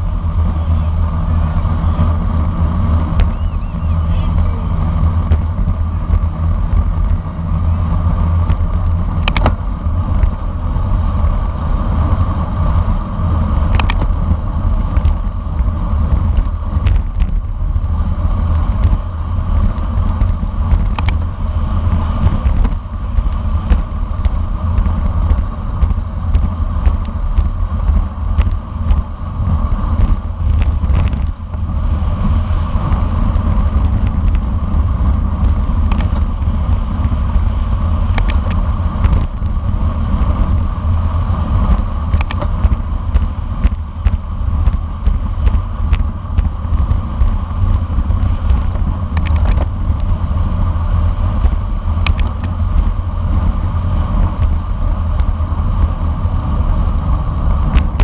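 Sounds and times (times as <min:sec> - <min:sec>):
wind rushing on microphone: 0:00.0 - 0:58.0.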